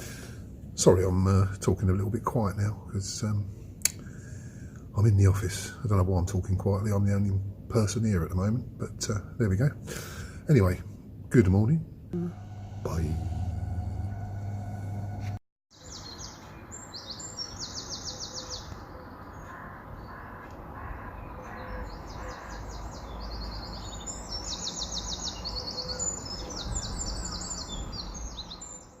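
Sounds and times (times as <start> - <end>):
low background rumble: 12.1 - 15.4
small birds chirping: 15.8 - 20.4, 21.0 - 29.0.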